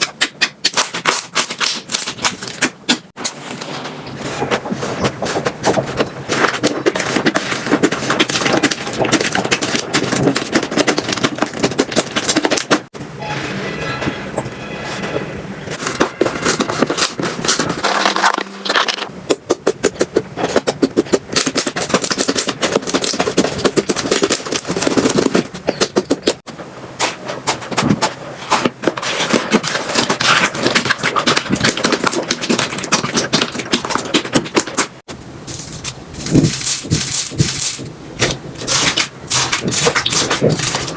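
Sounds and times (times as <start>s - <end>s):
slime crackling and popping: 29.0s - 40.9s.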